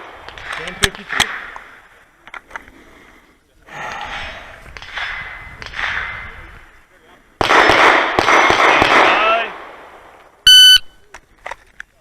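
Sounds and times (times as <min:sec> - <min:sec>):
loud gunshots echoing: 0:07.4 - 0:10.2.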